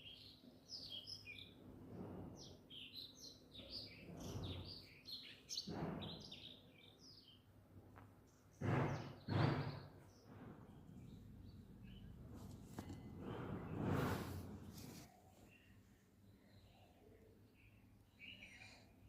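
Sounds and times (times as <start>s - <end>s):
small birds chirping: 0.0s - 19.0s
soft rustling: 12.0s - 15.3s.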